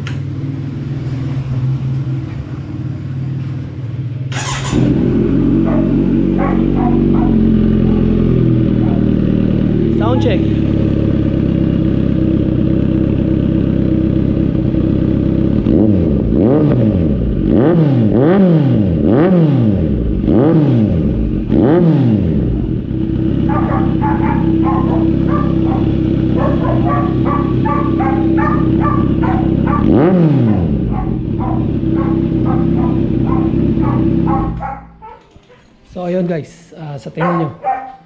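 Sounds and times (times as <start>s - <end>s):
motorcycle engine idling and revving: 0.0s - 35.5s, 37.0s - 38.0s
dog barking: 5.5s - 9.2s, 10.0s - 10.5s, 23.4s - 35.7s, 37.1s - 38.0s.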